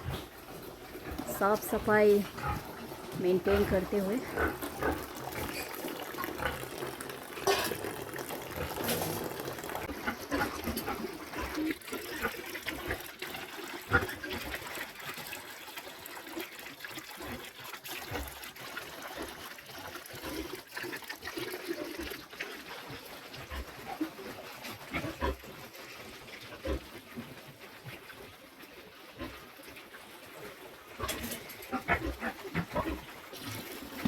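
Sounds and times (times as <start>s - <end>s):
pigs grunting: 0.0s - 13.1s, 23.4s - 25.6s, 31.0s - 34.0s
water splashing and trickling: 0.0s - 34.0s.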